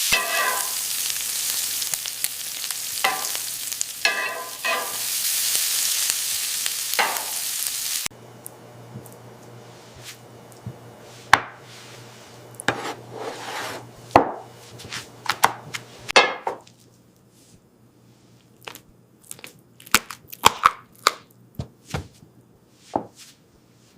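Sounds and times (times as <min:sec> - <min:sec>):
utensils and dishes clattering: 0:00.0 - 0:00.8, 0:03.0 - 0:03.4, 0:04.0 - 0:05.1
knife chopping on cutting board: 0:12.7 - 0:16.6.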